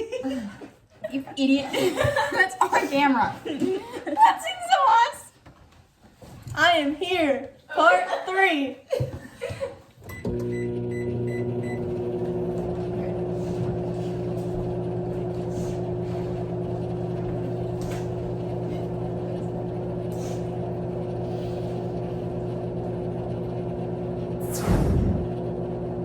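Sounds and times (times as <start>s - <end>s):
microwave oven humming: 10.0s - 26.0s.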